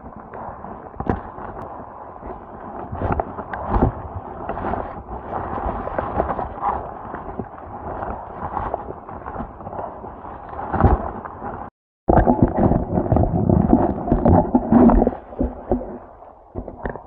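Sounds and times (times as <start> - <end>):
heavy rumble: 10.7 - 17.0.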